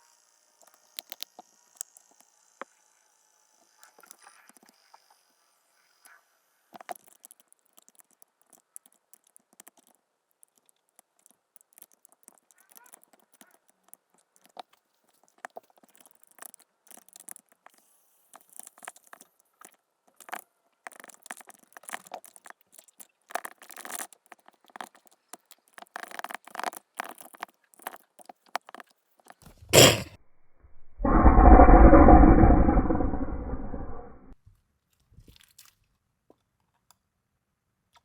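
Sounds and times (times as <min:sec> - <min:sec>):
loud rough sound: 0:29.7 - 0:34.3
sharp loud noise: 0:29.8 - 0:30.1, 0:30.8 - 0:34.3.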